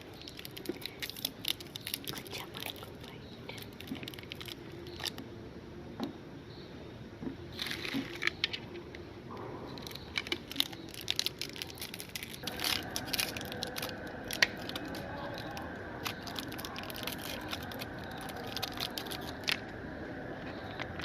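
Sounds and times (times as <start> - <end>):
candies crunching when handled: 0.0 - 5.2, 7.5 - 8.4, 9.8 - 19.8
meat grinder motor humming: 10.0 - 19.8.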